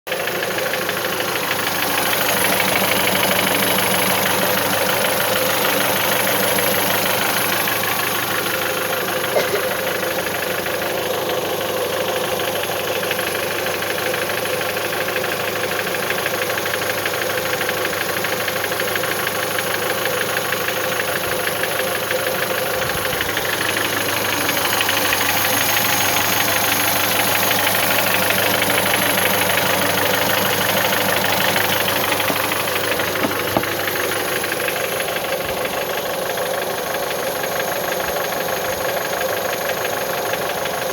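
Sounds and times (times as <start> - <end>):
engine running: 0.1 - 40.9
rapid knocking inside engine: 0.1 - 40.9.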